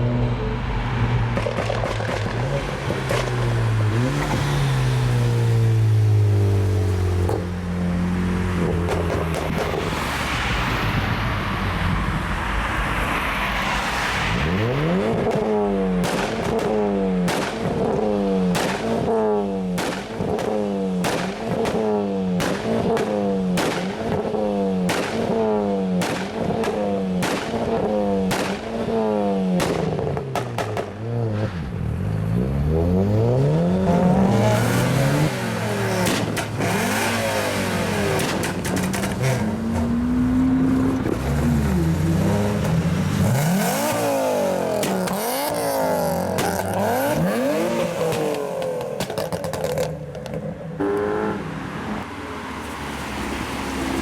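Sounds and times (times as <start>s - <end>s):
car engine revving: 0.0s - 10.7s, 13.6s - 54.0s
exhaust pops and crackles: 1.3s - 3.5s, 8.6s - 10.1s, 15.0s - 28.9s, 29.5s - 31.5s, 35.8s - 39.9s, 44.7s - 50.5s.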